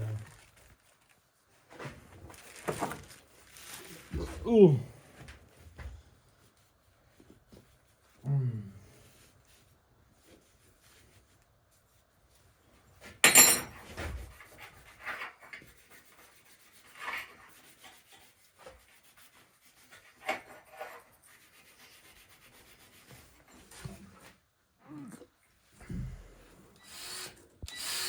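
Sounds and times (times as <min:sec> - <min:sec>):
tools scraping and rubbing: 0:13.2 - 0:24.4.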